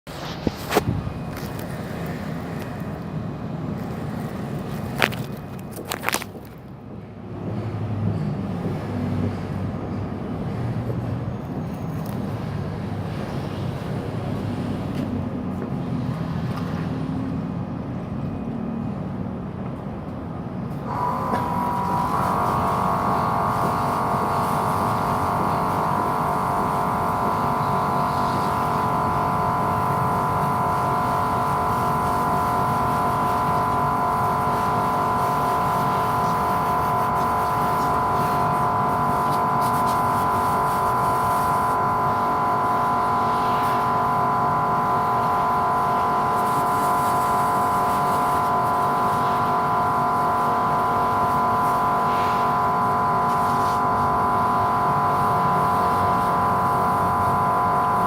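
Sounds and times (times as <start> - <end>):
low mechanical rumble: 20.6 - 58.0
motor whining: 20.8 - 58.0.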